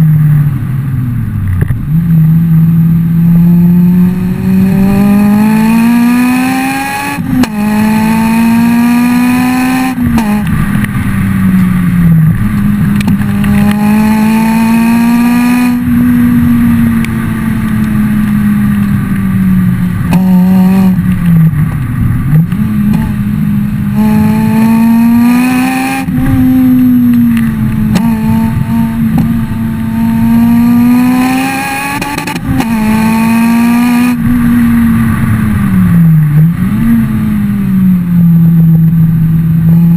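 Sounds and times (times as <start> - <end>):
car engine revving: 0.0 - 39.9
exhaust backfire pops: 10.0 - 13.9.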